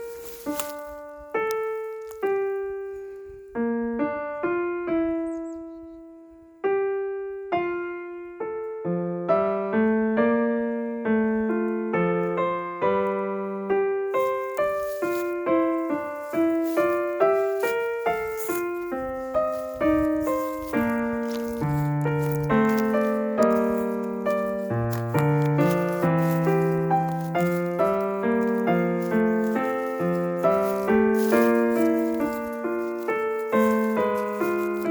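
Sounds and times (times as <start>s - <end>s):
slow piano melody: 0.0s - 34.9s.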